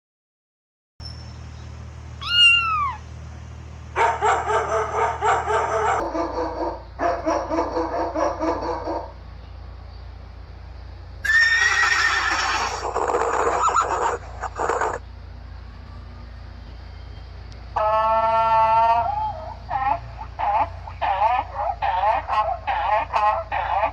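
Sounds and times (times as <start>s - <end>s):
horses whinnying: 2.2s - 3.0s, 11.2s - 15.0s, 17.8s - 23.9s.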